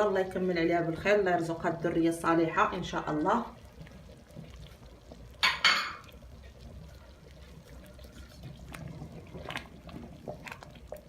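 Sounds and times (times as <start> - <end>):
thick soup splashing: 2.4 - 11.0.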